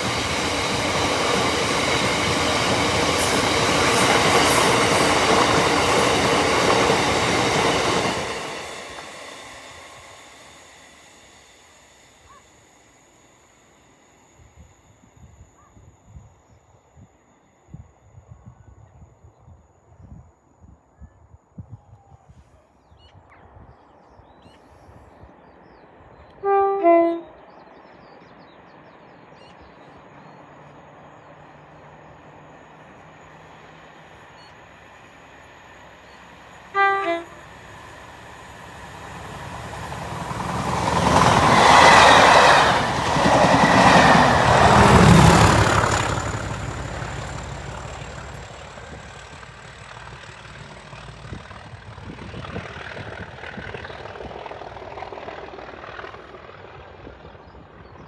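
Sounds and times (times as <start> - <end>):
train passing close by: 0.0 - 20.3, 23.8 - 58.0
train two-tone horn: 26.3 - 27.4, 36.7 - 37.6.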